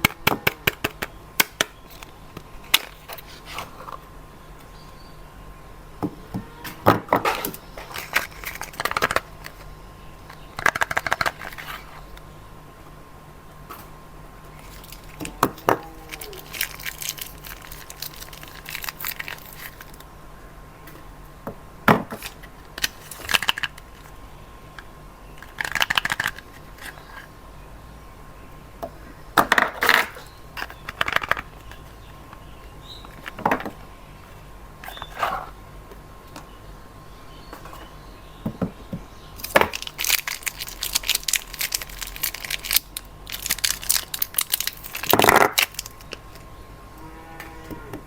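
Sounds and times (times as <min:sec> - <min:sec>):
soap wrappers crinkling: 0:07.8 - 0:09.7, 0:14.6 - 0:20.1, 0:22.8 - 0:24.1, 0:25.4 - 0:27.2, 0:39.4 - 0:46.5.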